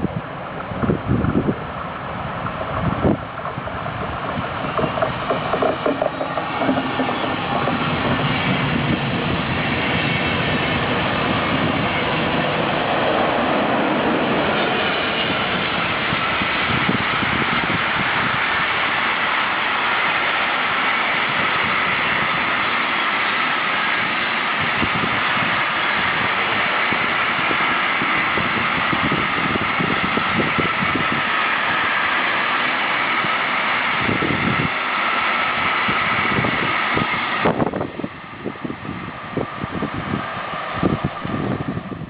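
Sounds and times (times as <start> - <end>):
train wheels on rails: 0.0 - 42.0.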